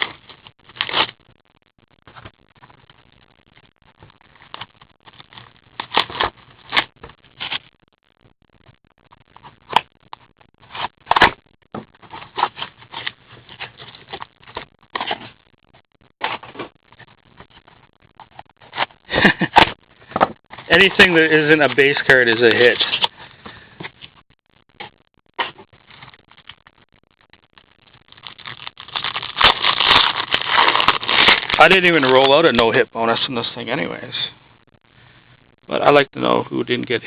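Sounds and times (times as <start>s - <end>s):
card wrappers crinkling: 12.0s - 15.3s, 20.5s - 23.2s, 28.1s - 32.8s
wrapper snaps: 28.1s - 32.4s.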